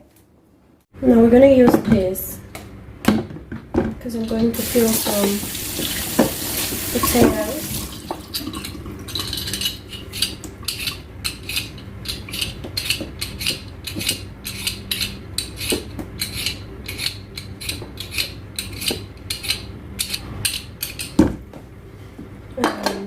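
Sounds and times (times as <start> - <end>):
peeler scraping potato skin: 9.4 - 21.1.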